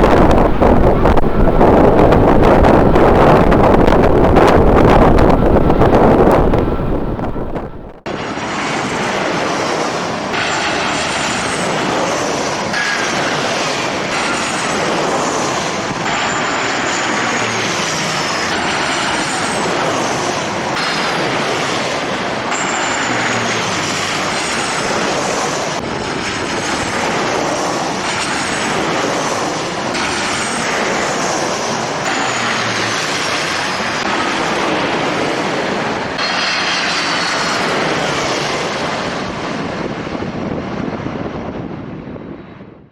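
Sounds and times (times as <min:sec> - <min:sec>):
high-pitched falling whines: 0:00.0 - 0:08.9
jet engines roaring: 0:00.0 - 0:42.9.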